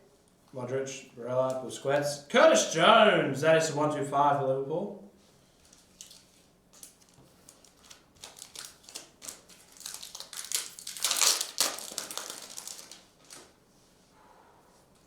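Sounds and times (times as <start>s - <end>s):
foil wrapper crinkling: 5.6s - 13.6s.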